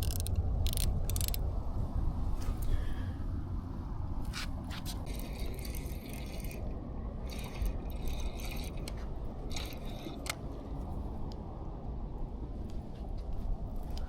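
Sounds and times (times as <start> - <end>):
fishing reel cranking whirr: 0.0 - 1.4, 5.1 - 6.6, 7.3 - 10.4.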